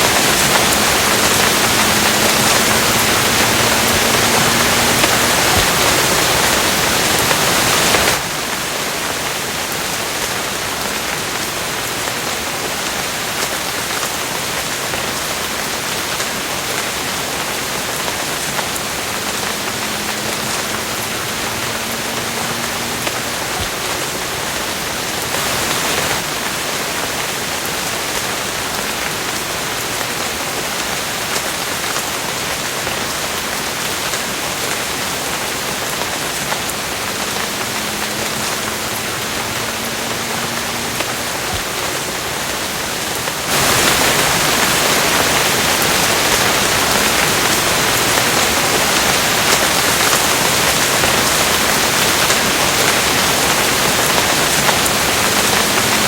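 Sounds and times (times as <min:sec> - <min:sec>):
steady rain: 0:00.0 - 0:56.0.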